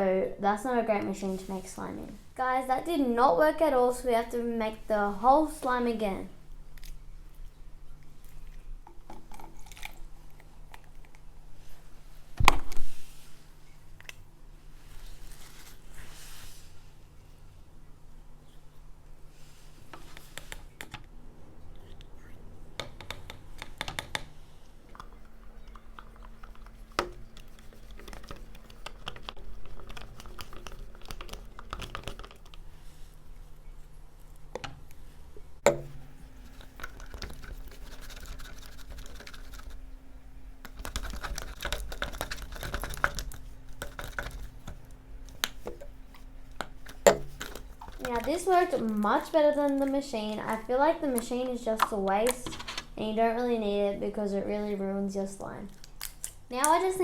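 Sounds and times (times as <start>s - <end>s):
slime stirred in a bowl: 21.8s - 33.5s, 35.7s - 52.4s
sharp knocks: 35.6s - 36.2s.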